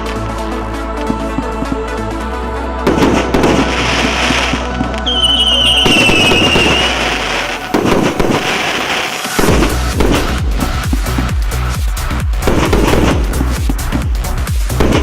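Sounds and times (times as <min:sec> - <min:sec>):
background music: 0:00.0 - 0:15.0
crackling firework bursts: 0:03.3 - 0:11.3
falling firework whistle: 0:05.0 - 0:09.6
fireworks shots firing: 0:05.1 - 0:10.4, 0:12.4 - 0:13.4, 0:14.8 - 0:15.0.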